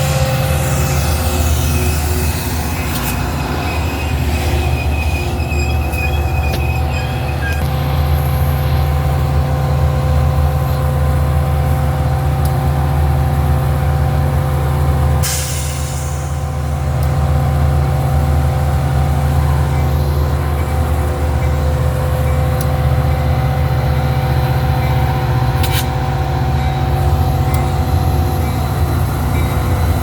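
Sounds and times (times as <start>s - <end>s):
diesel locomotive droning: 0.0s - 30.0s
air brake hiss: 15.2s - 16.4s.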